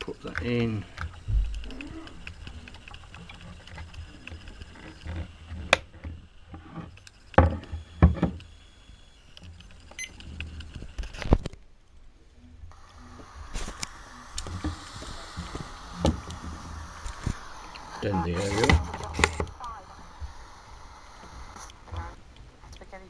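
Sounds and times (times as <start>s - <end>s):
rubbing and fumbling: 0.0s - 8.5s, 12.5s - 20.4s.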